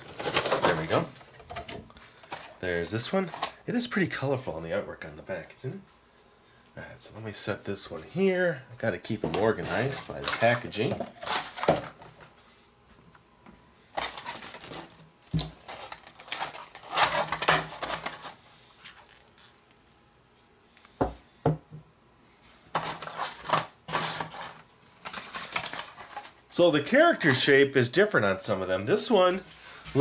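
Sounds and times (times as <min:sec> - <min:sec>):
plastic puzzles handling noises: 0:00.0 - 0:03.6, 0:09.1 - 0:12.4, 0:13.9 - 0:19.6, 0:22.7 - 0:26.4.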